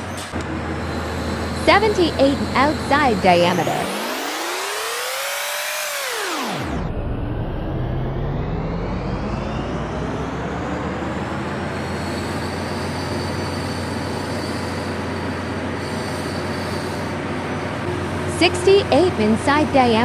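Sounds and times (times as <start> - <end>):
machinery low hum: 0.4 - 4.4, 6.8 - 12.5, 17.2 - 20.0.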